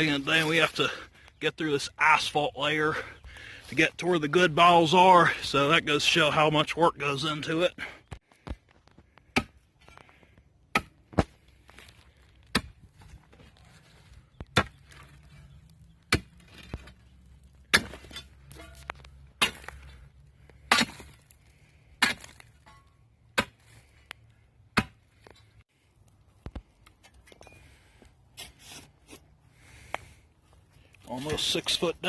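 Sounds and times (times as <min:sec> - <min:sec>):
digging tool striking asphalt: 0:10.7 - 0:11.4, 0:16.0 - 0:17.0, 0:17.6 - 0:21.4, 0:22.0 - 0:23.8, 0:24.7 - 0:25.3.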